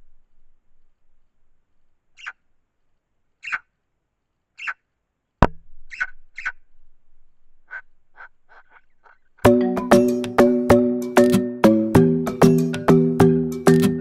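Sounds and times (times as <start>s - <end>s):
magpie harsh calls: 2.2s - 2.4s, 3.4s - 3.7s, 4.6s - 4.9s, 5.9s - 6.6s
music with ringing struck notes: 9.5s - 14.0s.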